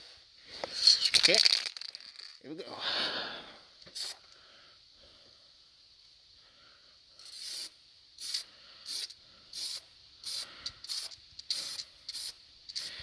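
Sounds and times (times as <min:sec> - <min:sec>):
spray paint can hissing bursts: 0:03.9 - 0:04.2, 0:07.2 - 0:13.0.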